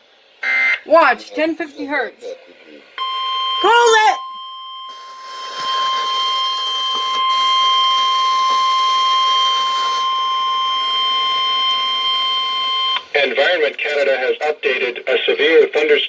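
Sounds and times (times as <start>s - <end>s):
radio static: 0.8s - 3.0s, 5.0s - 10.0s, 10.8s - 16.0s
high-pitched alarm beep: 3.0s - 13.1s.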